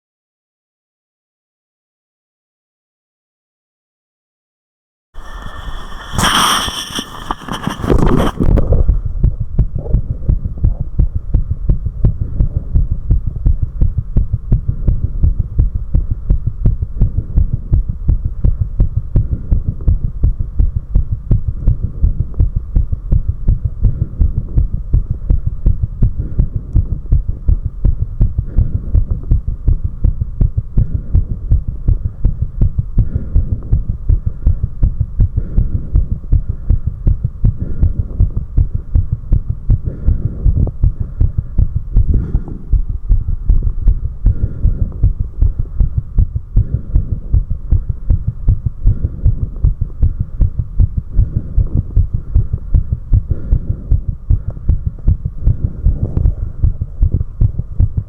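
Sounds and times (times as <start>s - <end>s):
burst of noise: 5.2s - 8.3s
fast heartbeat: 5.2s - 58.0s.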